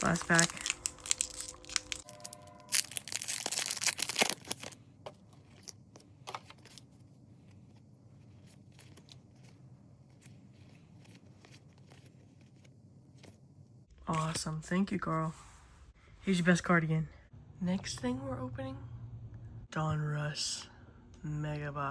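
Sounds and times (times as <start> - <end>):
plastic wrapper tearing and crinkling: 0.0 - 4.8.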